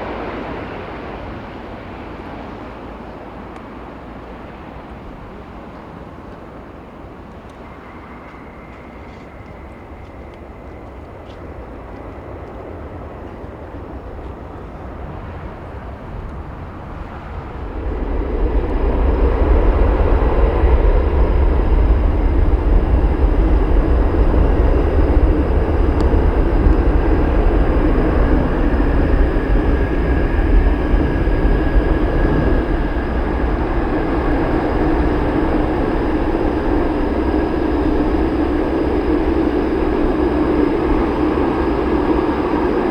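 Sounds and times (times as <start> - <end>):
jet engines running: 0.0 - 42.9.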